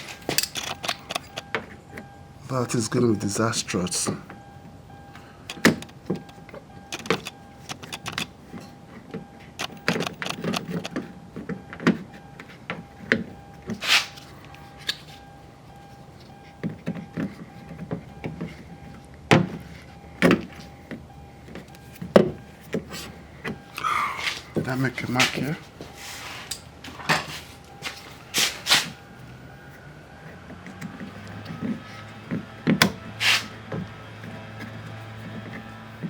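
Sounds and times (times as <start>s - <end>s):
scrape inside car door: 13.8s - 14.4s, 33.2s - 33.6s.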